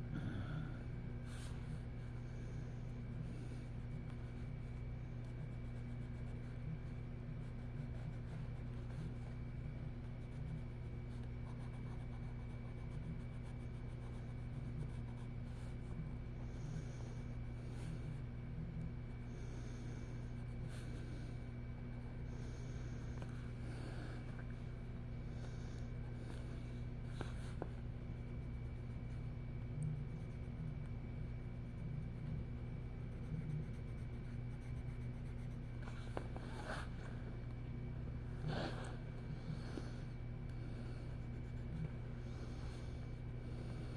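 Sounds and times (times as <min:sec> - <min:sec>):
low hum: 0:00.0 - 0:43.9
crayon scratching on paper: 0:03.5 - 0:16.2, 0:32.8 - 0:36.9, 0:40.9 - 0:42.8
colouring utensil scratching paper: 0:33.0 - 0:35.7.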